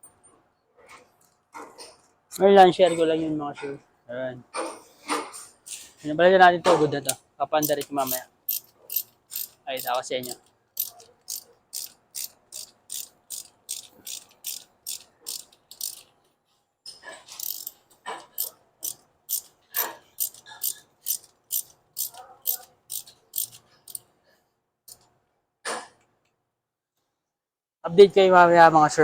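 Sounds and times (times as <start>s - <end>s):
socket ratchet clicking: 7.1s - 16.2s, 17.4s - 24.1s.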